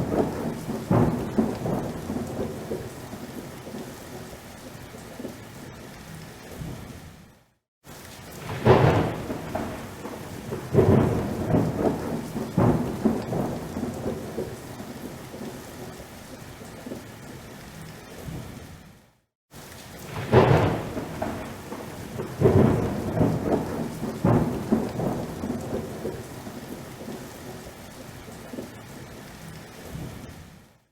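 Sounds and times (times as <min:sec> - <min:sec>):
thunder cracks and rumble: 0:00.0 - 0:03.8, 0:08.3 - 0:15.5, 0:20.0 - 0:27.7
steady rain: 0:00.0 - 0:30.9.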